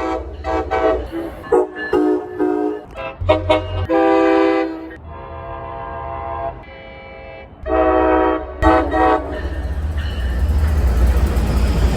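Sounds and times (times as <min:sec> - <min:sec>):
multi-note train horn blasts: 0:00.0 - 0:10.0
passing train rumble: 0:00.0 - 0:11.9.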